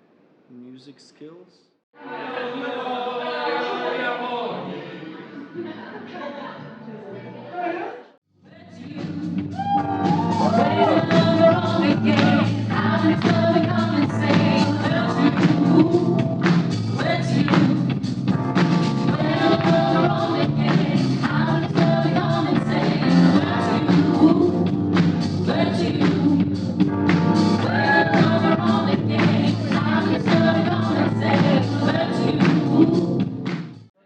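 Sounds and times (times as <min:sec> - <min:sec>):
choir singing: 0:02.0 - 0:08.1, 0:09.8 - 0:16.2, 0:19.1 - 0:24.8, 0:25.4 - 0:26.6, 0:27.5 - 0:33.3.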